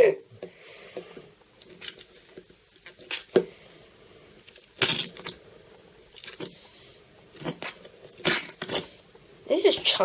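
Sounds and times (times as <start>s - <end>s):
slime squelching: 1.6s - 3.6s, 6.1s - 6.7s, 7.3s - 10.0s.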